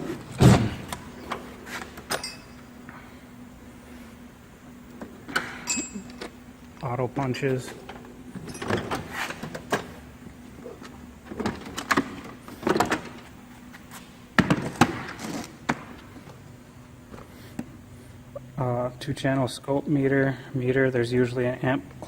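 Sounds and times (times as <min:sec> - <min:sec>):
metal drawers sliding: 0:00.0 - 0:02.5, 0:07.5 - 0:10.1, 0:10.7 - 0:13.3
tools rattling and clanking: 0:00.0 - 0:02.7, 0:05.0 - 0:10.1, 0:10.7 - 0:13.4.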